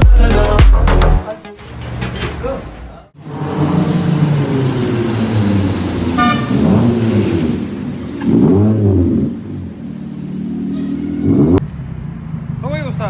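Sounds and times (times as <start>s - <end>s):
car engine revving: 3.2s - 12.7s.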